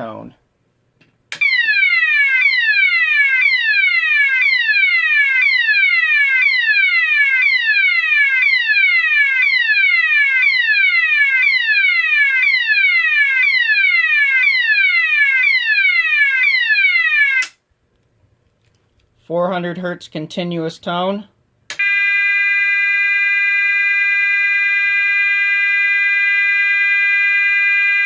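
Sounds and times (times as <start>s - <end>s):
alarm sounder falling sweep: 1.4s - 17.5s, 21.8s - 28.0s.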